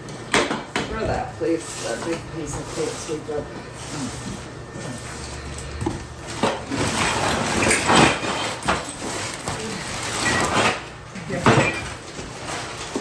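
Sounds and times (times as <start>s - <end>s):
debris scraping on floor: 6.2s - 13.0s.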